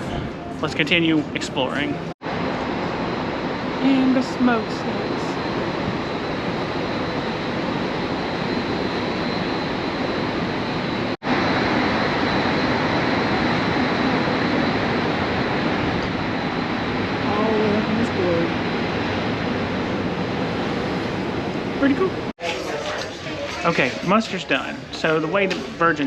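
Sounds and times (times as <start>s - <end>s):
faint high whine: 0.0s - 26.0s
steady rushing noise: 0.0s - 26.0s.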